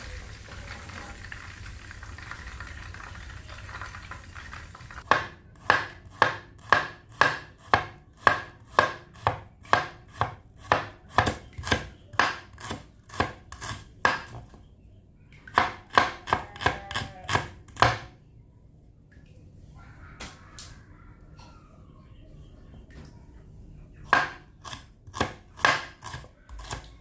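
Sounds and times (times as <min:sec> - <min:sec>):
knife chopping on cutting board: 0:05.1 - 0:14.5, 0:24.1 - 0:26.9.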